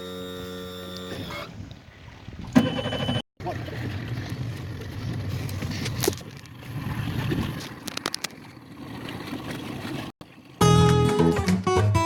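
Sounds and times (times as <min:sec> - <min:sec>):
low boat rumble: 0:00.1 - 0:11.2.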